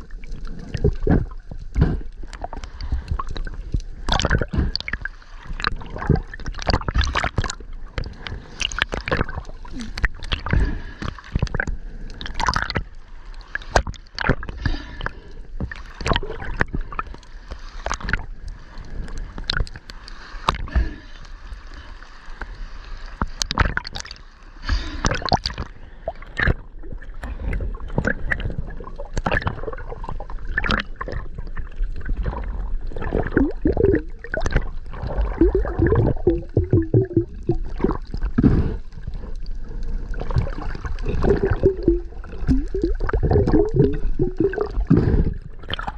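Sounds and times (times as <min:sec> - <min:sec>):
water gurgling and sloshing: 0:00.0 - 0:45.9
low rumble: 0:35.0 - 0:38.6.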